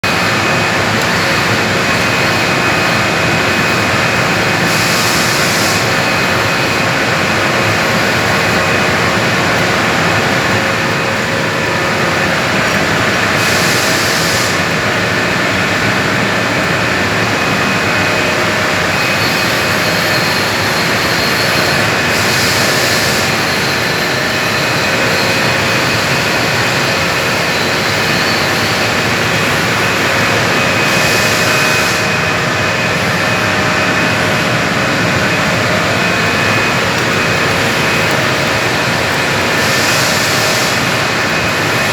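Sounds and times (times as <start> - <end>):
welding arc crackling hiss: 0.0 - 41.9.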